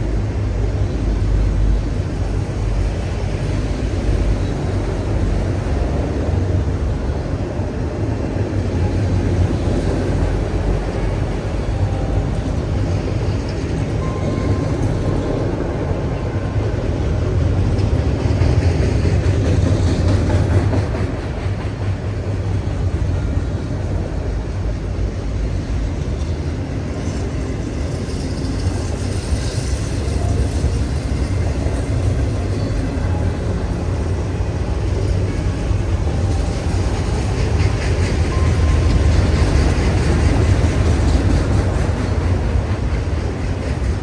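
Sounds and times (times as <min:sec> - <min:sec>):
freight train rumbling on rails: 0:00.0 - 0:44.0.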